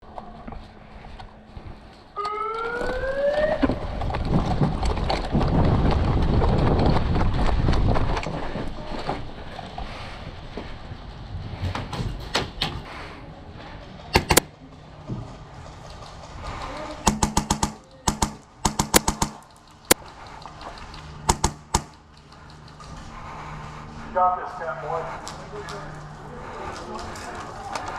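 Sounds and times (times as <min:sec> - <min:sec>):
rising siren-like tone: 0:02.2 - 0:03.9
sharp cracks: 0:17.0 - 0:22.9.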